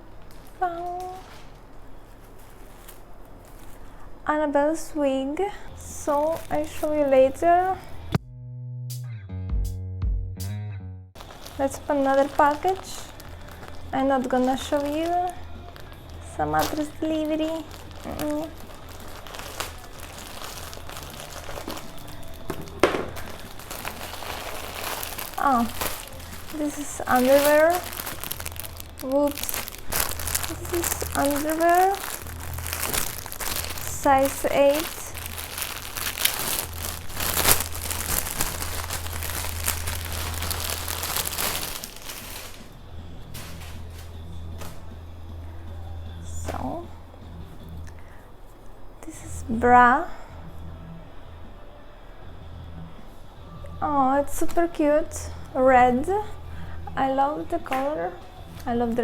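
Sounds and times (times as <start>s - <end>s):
packaging rustling and crinkling: 0.0s - 4.2s, 5.6s - 8.2s, 11.2s - 44.9s.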